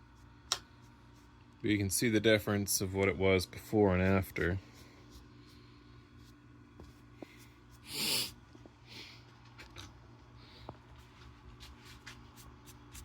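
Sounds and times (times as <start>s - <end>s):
soft brush strokes on feathers: 4.0s - 7.8s
person sneezing: 7.9s - 8.4s.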